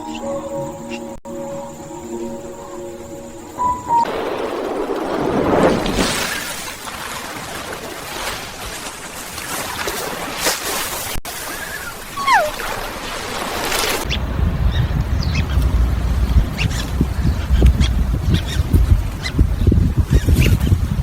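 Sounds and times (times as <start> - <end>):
surf hissing: 1.8 - 14.4
low rumble: 14.1 - 20.1.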